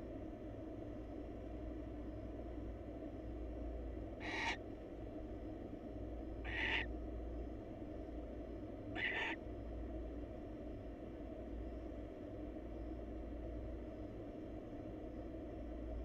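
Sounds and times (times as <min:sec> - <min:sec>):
steady low hum: 0:00.0 - 0:16.0
barn owl hissing screeches: 0:04.2 - 0:04.6, 0:06.5 - 0:06.9, 0:09.0 - 0:09.4.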